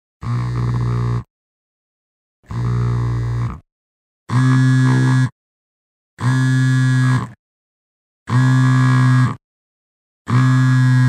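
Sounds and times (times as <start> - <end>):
phone vibrating: 0.2 - 1.3, 2.5 - 3.6, 4.3 - 5.4, 6.2 - 7.4, 8.3 - 9.4, 10.3 - 11.0.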